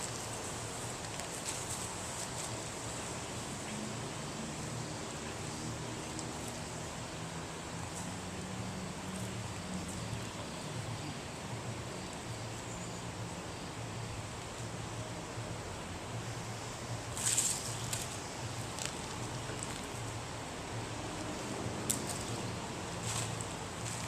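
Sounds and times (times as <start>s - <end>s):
rushing outdoor noise: 0.0s - 24.0s.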